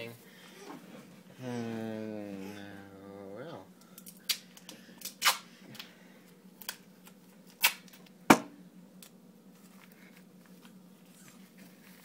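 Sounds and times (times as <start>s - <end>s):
low steady hum: 0.0s - 12.0s
duct tape ripping: 5.0s - 5.8s, 7.5s - 8.0s.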